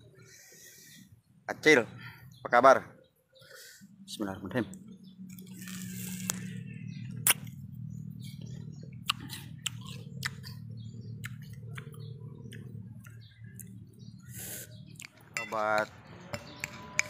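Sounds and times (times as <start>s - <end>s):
steady low hum: 3.6s - 16.0s
wet chewing clicks: 4.7s - 15.9s
fruit crunching: 5.3s - 13.9s, 14.9s - 15.9s.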